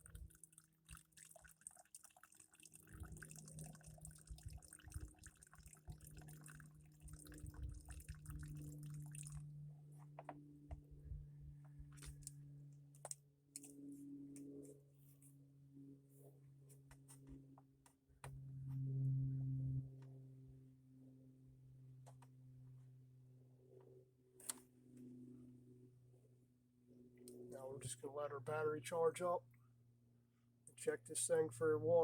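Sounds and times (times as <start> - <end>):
fuel dripping into a cup: 0.0 - 9.6.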